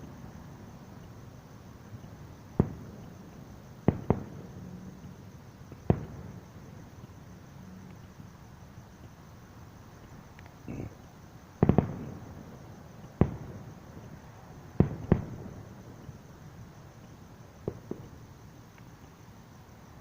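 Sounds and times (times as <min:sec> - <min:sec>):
light firework pops: 0:02.0 - 0:07.2, 0:11.6 - 0:16.3, 0:17.0 - 0:19.1
firework booms echoing: 0:02.6 - 0:03.1, 0:03.9 - 0:04.6, 0:05.8 - 0:06.4, 0:11.6 - 0:12.6, 0:13.2 - 0:14.1, 0:14.8 - 0:16.0.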